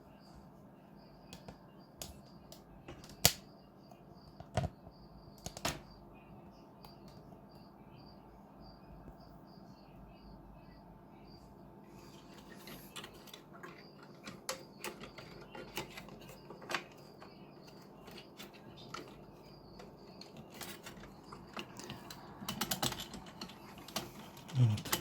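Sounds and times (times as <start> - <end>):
small plastic parts clicking: 12.4 - 25.0.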